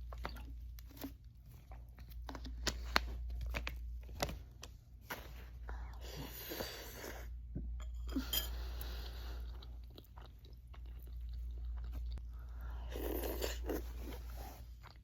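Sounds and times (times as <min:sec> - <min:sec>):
person chewing noodles: 0:08.1 - 0:15.0.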